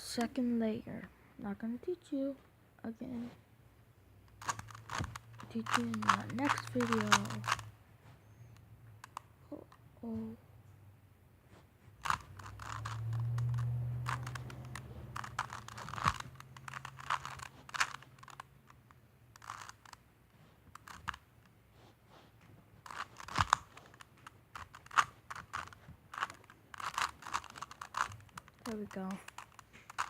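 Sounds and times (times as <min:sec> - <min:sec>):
puzzle cube clicking: 0:04.2 - 0:09.8, 0:12.0 - 0:21.6, 0:22.8 - 0:30.0.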